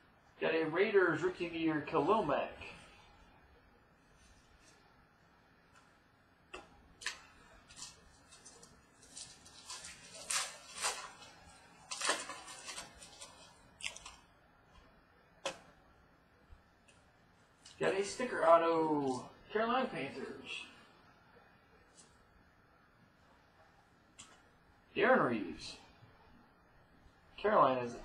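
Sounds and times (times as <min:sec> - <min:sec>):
wrapper rustling: 0:07.0 - 0:14.2.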